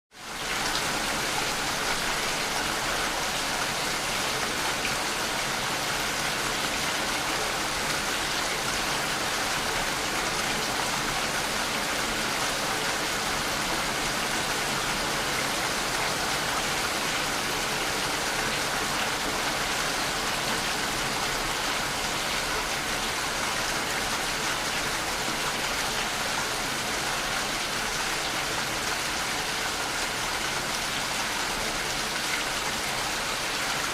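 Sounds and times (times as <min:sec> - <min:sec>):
rain falling steadily: 0:00.1 - 0:33.9.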